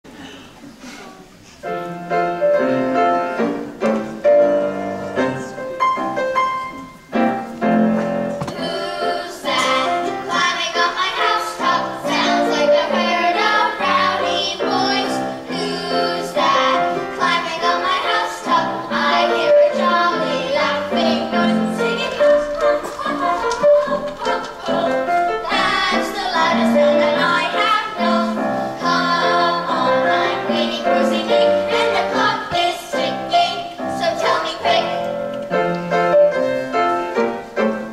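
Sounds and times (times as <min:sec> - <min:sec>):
instrumental accompaniment: 0:01.6 - 0:37.9
children singing: 0:08.4 - 0:35.2.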